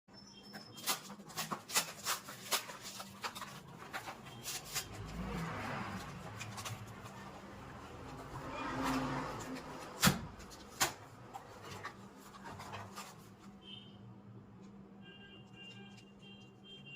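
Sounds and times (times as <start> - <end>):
packaging rustling: 0.5 - 8.4.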